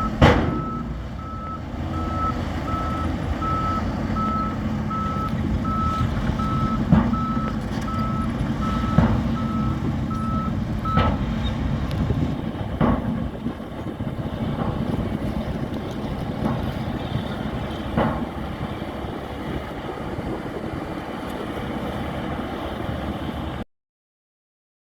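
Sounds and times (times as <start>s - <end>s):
reversing alarm beeping: 0.0s - 11.2s
diesel engine rumble: 0.0s - 23.6s.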